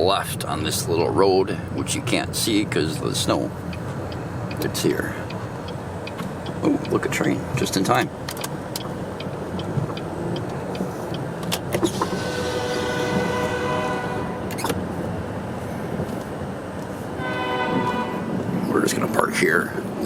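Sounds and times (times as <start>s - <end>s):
car cabin rumble on snowy road: 1.8s - 17.2s
locomotive horn chord: 12.0s - 14.6s, 17.2s - 18.6s.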